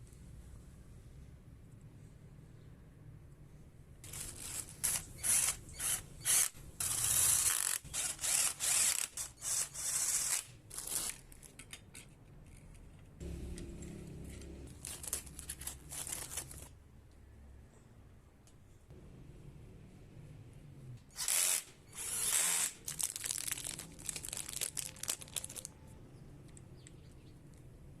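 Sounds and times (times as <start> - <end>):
mechanical ratcheting: 4.0 - 11.2, 21.2 - 23.8
steady low mechanical sound: 12.0 - 17.5.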